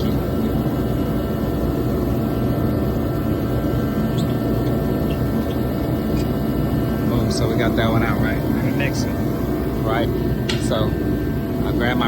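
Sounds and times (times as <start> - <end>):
steady low rumbling: 0.0 - 12.0.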